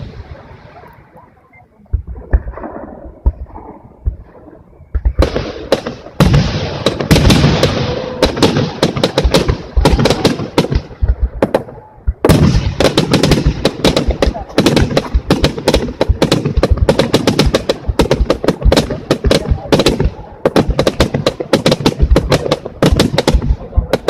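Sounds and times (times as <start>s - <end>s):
fireworks crackling: 0.0s - 24.0s
fireworks bangs: 1.7s - 24.0s.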